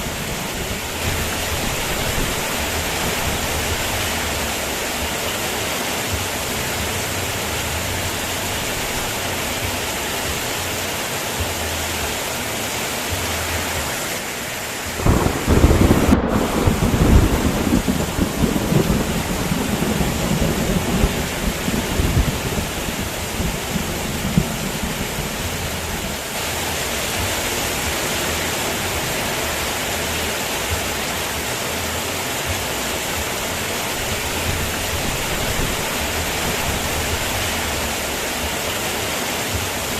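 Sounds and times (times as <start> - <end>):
thunder rumbling: 0.0 - 9.6, 14.9 - 26.3, 33.2 - 37.8
heavy rain: 0.0 - 39.9.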